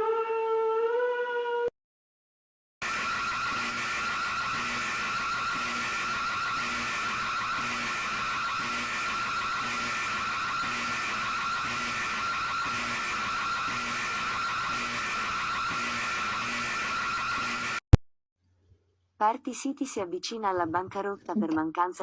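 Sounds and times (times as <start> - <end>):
shrill wavering electronic tone: 2.9 - 17.8.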